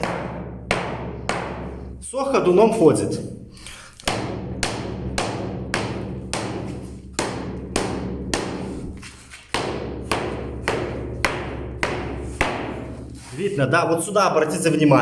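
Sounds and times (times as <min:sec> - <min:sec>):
hammer tapping hollow floor: 0:00.0 - 0:02.0, 0:04.0 - 0:13.2.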